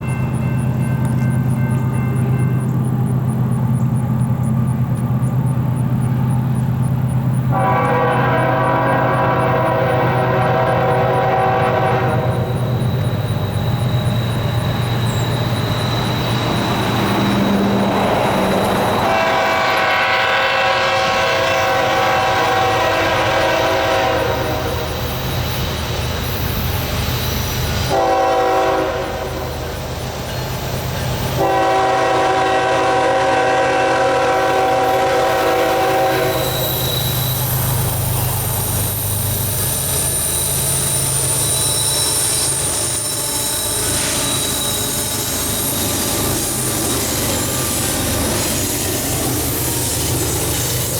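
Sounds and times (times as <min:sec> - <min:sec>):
diesel engines rumbling: 0:00.2 - 0:50.9
train horn blasts: 0:07.5 - 0:12.9, 0:16.8 - 0:25.0, 0:27.8 - 0:29.7, 0:31.3 - 0:37.3.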